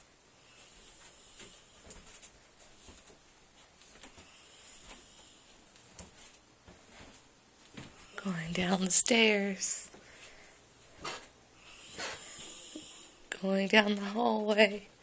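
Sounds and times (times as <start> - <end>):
faint snoring: 11.6 - 13.3.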